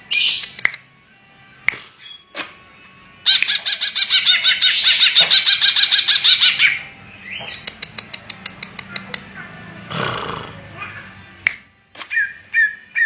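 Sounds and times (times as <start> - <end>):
sharp ticking clicks: 7.6 - 9.3.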